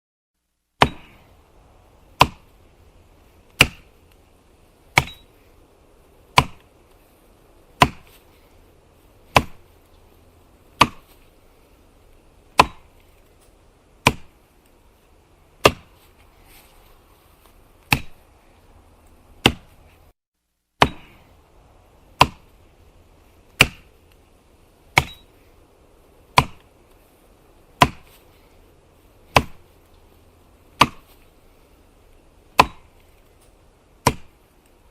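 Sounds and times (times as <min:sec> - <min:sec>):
axe chopping wood: 0:00.8 - 0:01.3, 0:02.0 - 0:02.6, 0:03.5 - 0:04.2, 0:04.8 - 0:05.4, 0:06.3 - 0:06.7, 0:07.8 - 0:08.4, 0:09.2 - 0:09.8, 0:10.7 - 0:11.3, 0:12.5 - 0:13.3, 0:14.0 - 0:14.4, 0:15.6 - 0:16.1, 0:17.8 - 0:18.2, 0:19.4 - 0:19.7, 0:20.8 - 0:21.3, 0:22.1 - 0:22.6, 0:23.5 - 0:23.9, 0:24.9 - 0:25.3, 0:26.3 - 0:26.7, 0:27.8 - 0:28.3, 0:29.2 - 0:29.8, 0:30.7 - 0:31.3, 0:32.5 - 0:33.3, 0:34.0 - 0:34.5.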